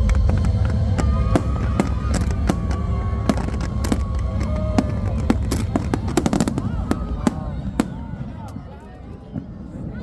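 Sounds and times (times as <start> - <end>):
firework bangs and cracks: 0.0 - 8.7
low rumble: 0.0 - 10.0.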